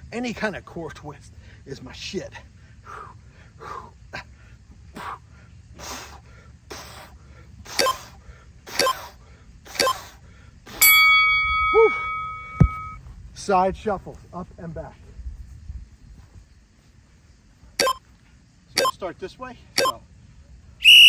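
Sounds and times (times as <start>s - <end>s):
ringing tone: 10.8s - 13.0s
short thump: 12.4s - 13.0s.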